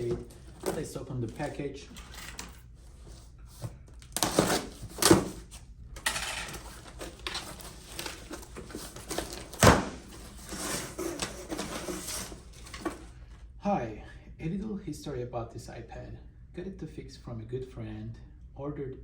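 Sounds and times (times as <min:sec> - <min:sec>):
packaging rustling and tearing: 0:00.0 - 0:13.1.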